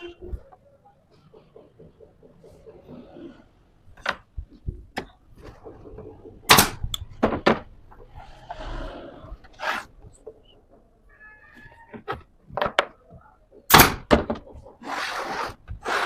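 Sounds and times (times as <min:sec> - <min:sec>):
wooden parts knocking: 0:01.2 - 0:03.1, 0:03.9 - 0:08.1, 0:11.9 - 0:14.8
scraping noise: 0:07.9 - 0:10.5.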